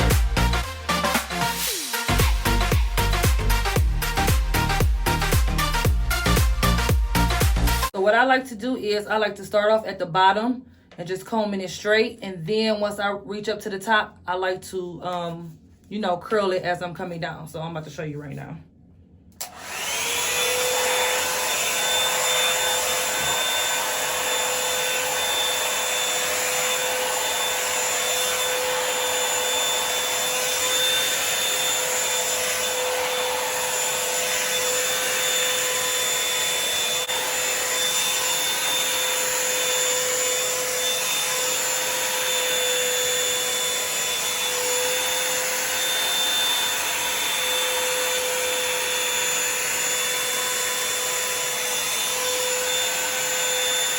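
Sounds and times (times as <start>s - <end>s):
hot-air brush dryer blowing: 0.0s - 7.9s, 19.4s - 53.9s.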